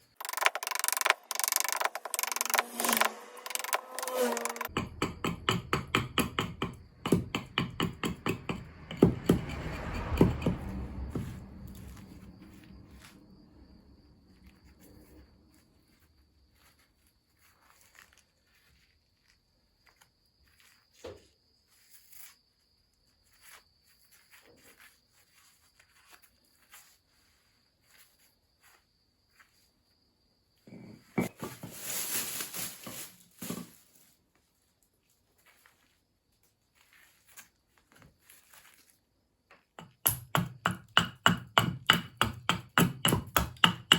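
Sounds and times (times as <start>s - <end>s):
knife scraping wood: 0.1s - 5.3s.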